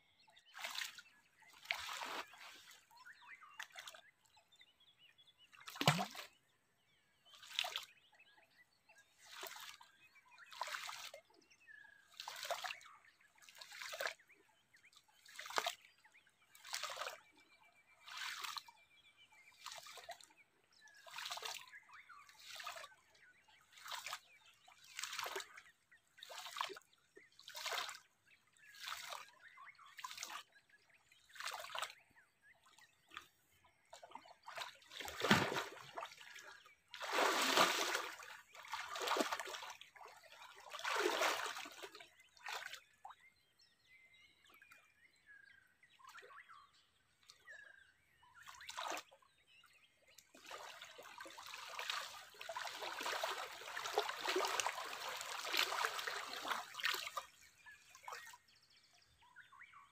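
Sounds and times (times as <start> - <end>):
water sloshing and splashing: 0.4 - 4.0, 5.7 - 6.4, 7.3 - 7.9, 9.2 - 11.3, 12.1 - 14.2, 16.6 - 17.3, 18.1 - 18.7, 19.4 - 20.3, 20.9 - 23.0, 23.7 - 30.5, 31.1 - 32.0, 32.6 - 43.1, 50.3 - 58.6.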